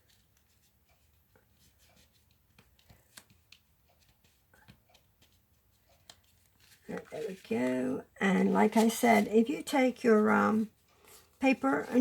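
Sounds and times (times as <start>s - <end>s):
paper and card handling taps: 0.1s - 7.8s.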